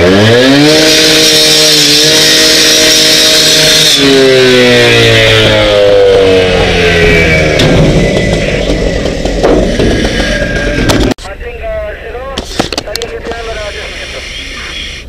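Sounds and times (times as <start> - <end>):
engine revving: 0.0 - 11.2.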